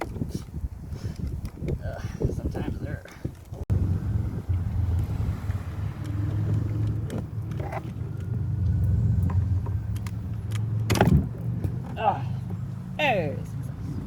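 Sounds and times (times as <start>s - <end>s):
vehicle engine rumbling: 3.5s - 14.0s.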